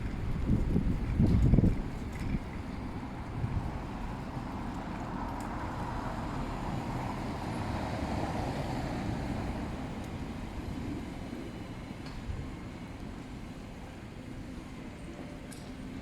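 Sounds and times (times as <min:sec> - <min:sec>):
street traffic noise: 0:00.0 - 0:16.0
vehicle passing: 0:05.0 - 0:09.9.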